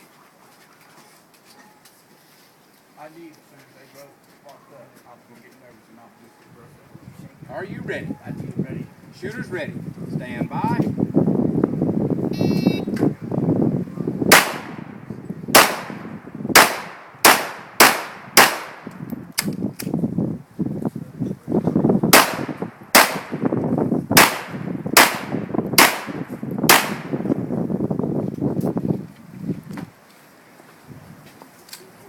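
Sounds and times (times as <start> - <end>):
pistol shots: 14.3 - 14.9, 15.5 - 19.5, 22.1 - 23.4, 24.2 - 27.2.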